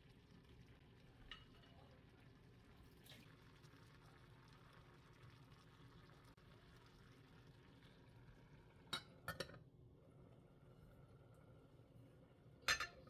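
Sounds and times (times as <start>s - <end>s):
kitchenware clinking: 12.6s - 13.0s.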